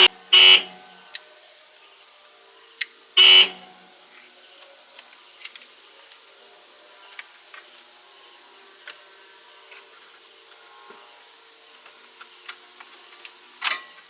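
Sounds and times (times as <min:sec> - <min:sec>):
loud horn-like blast: 0:00.0 - 0:01.1, 0:03.2 - 0:04.0.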